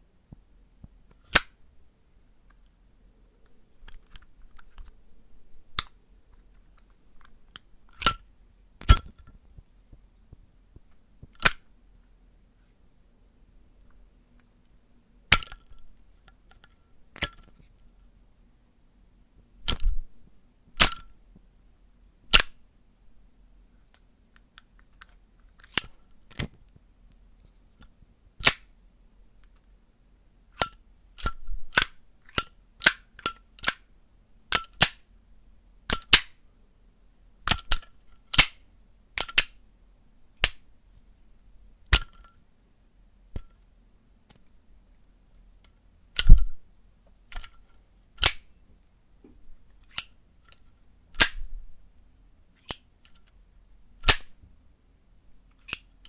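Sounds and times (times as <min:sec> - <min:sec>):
lighter lid clinking open and shut: 0:19.7 - 0:20.0, 0:20.8 - 0:21.1, 0:28.4 - 0:28.6, 0:30.6 - 0:33.8, 0:39.2 - 0:39.5, 0:46.2 - 0:46.6, 0:51.2 - 0:51.4, 0:54.0 - 0:54.3.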